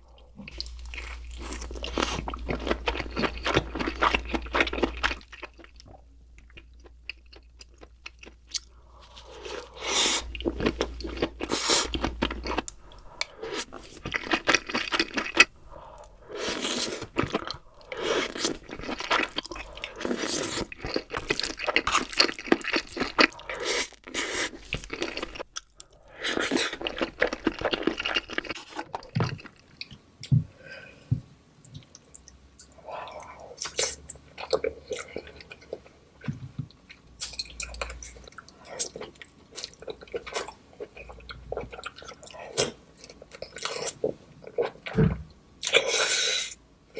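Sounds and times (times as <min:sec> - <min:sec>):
crab crunching and chewing: 0:00.5 - 0:29.8.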